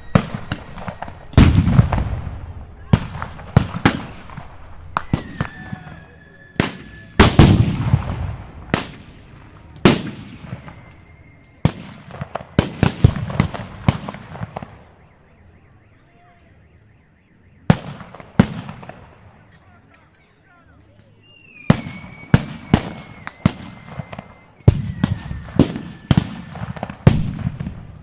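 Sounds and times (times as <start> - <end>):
heavy boom with long rumble: 0.0 - 14.8
rifle shots with rolling echo: 0.0 - 28.0.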